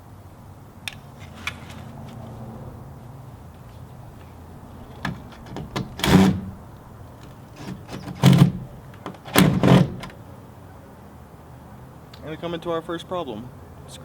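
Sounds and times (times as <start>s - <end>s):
knocks and clunks: 4.9s - 6.6s, 7.2s - 10.2s.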